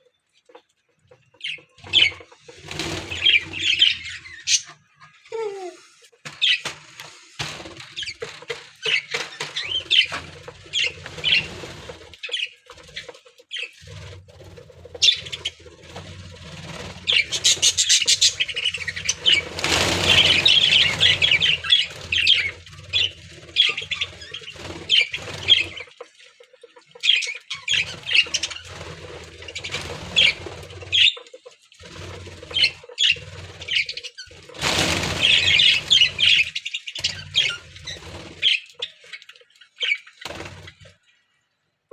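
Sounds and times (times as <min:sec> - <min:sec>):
wing flapping: 0:01.0 - 0:26.2, 0:27.7 - 0:39.2, 0:40.1 - 0:41.0
budgerigars chirping: 0:17.0 - 0:25.9.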